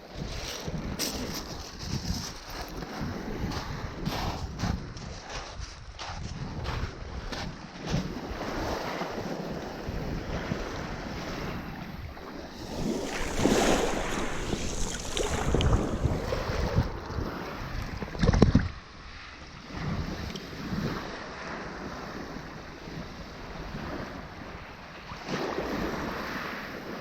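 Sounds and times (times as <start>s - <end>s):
wind buffeting microphone: 0.2s - 27.0s
sea waves breaking on shore: 8.0s - 27.0s.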